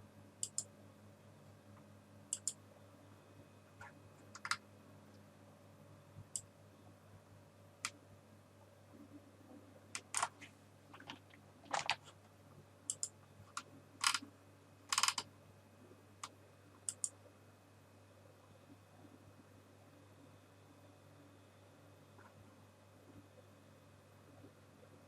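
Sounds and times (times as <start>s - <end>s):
keyboard keystrokes: 0.4s - 0.6s, 12.9s - 13.1s, 14.9s - 15.2s
computer mouse clicks: 0.4s - 0.7s, 2.3s - 2.6s, 3.8s - 4.6s, 10.0s - 12.2s, 12.9s - 14.2s, 14.9s - 15.3s, 16.2s - 17.2s.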